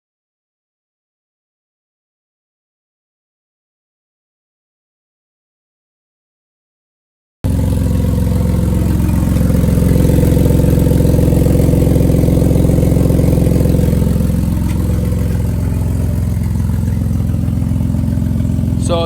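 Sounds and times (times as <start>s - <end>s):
car engine idling: 7.5s - 19.0s.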